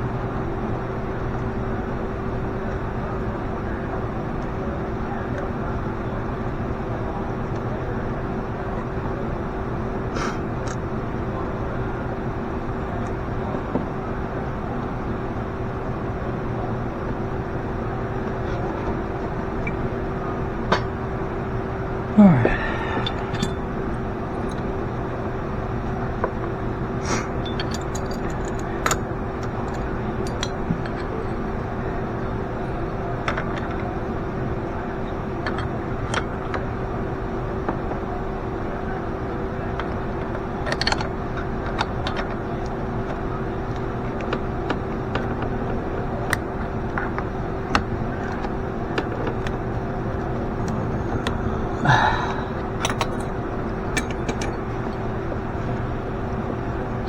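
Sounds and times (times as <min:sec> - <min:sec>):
steady machine hum: 0:00.0 - 0:57.0
metal tools clicking and clinking: 0:22.8 - 0:24.7, 0:27.4 - 0:31.4, 0:50.6 - 0:54.7.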